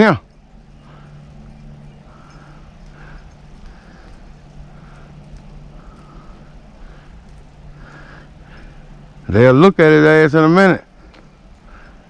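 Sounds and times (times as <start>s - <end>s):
distant hounds baying: 0.0s - 9.3s
steady low hum: 0.0s - 12.0s.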